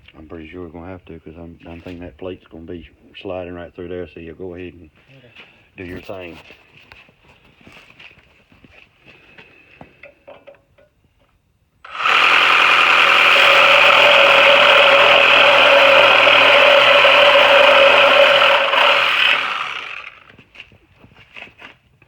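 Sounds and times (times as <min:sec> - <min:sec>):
electric grinder whining on steel: 0:11.8 - 0:20.4.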